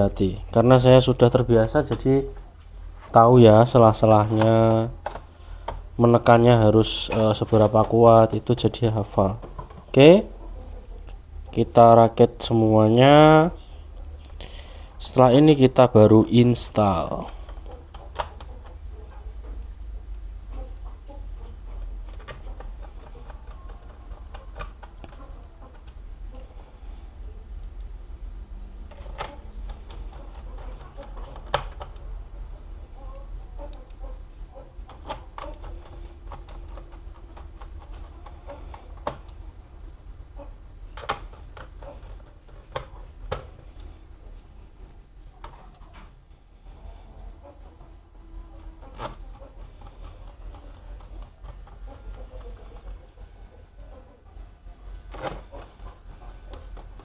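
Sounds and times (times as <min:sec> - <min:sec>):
steady low hum: 0:00.0 - 0:57.0
plastic parts clicking together: 0:04.3 - 0:05.8, 0:28.9 - 0:32.0, 0:41.0 - 0:43.9
plastic laptop parts clicking: 0:41.0 - 0:43.5.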